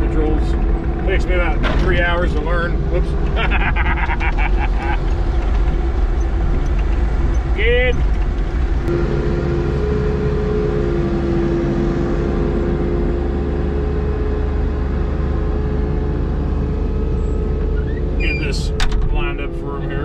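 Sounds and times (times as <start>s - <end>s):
diesel engine rumbling: 0.0s - 20.0s
two-note whine: 8.8s - 20.0s.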